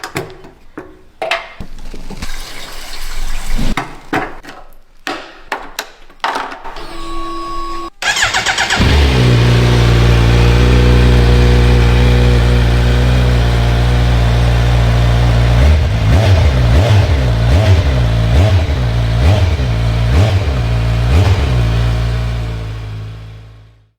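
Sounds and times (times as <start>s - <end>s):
engine revving: 8.0s - 23.7s
motorcycle engine starting: 8.0s - 23.9s
motorcycle engine idling: 8.1s - 23.9s.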